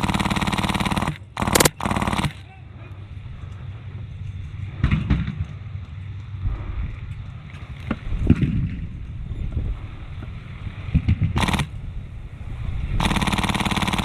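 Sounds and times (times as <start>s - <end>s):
wind noise on microphone: 6.4s - 13.1s.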